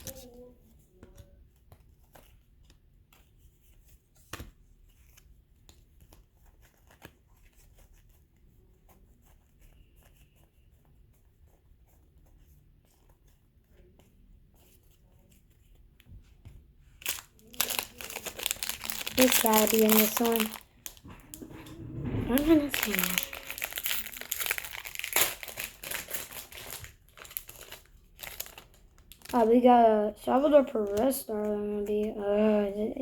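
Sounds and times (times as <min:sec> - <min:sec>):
trading cards rustling: 0:17.0 - 0:21.5, 0:22.2 - 0:33.0.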